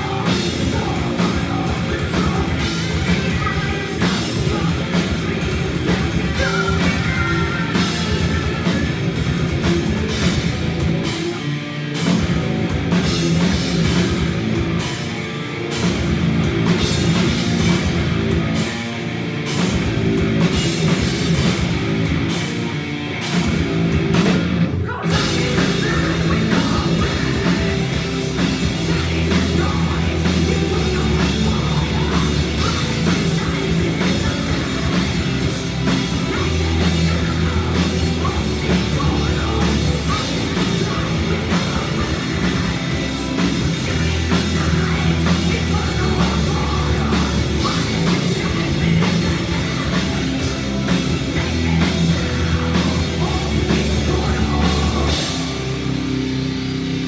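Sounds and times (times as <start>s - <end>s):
heavy metal band playing: 0.0s - 57.0s.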